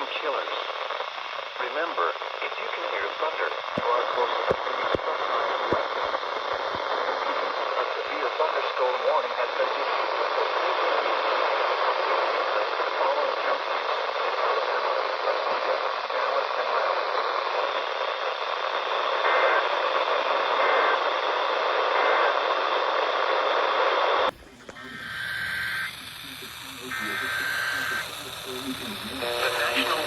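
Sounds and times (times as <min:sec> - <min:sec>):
radio static hiss: 0:00.0 - 0:30.0.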